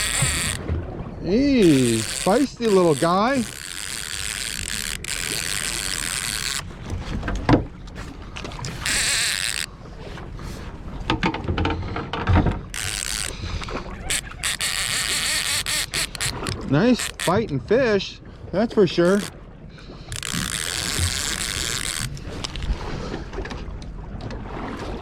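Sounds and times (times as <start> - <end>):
water rushing and splashing: 0.0 - 25.0
clicks and knocks on boat: 1.5 - 10.3, 11.0 - 17.6.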